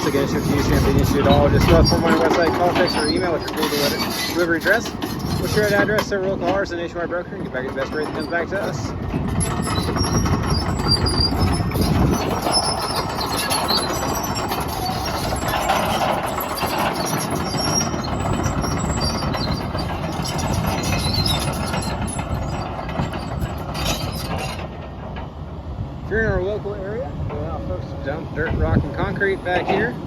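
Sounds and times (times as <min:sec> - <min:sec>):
short high squeaks: 0:00.0 - 0:06.0, 0:08.2 - 0:08.7, 0:09.4 - 0:24.7
excavator diesel engine running: 0:00.0 - 0:30.0
metal clanking: 0:07.6 - 0:25.4.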